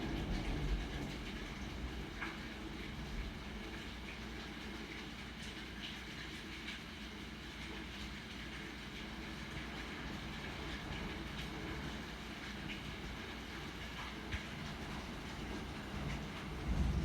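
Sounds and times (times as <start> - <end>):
hail rushing hiss: 9.0 - 17.0.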